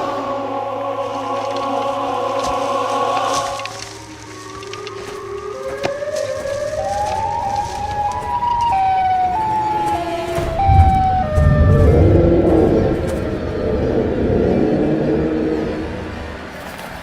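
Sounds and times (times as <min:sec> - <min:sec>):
siren wail: 0:00.0 - 0:16.6
loud low rumble: 0:07.6 - 0:16.6.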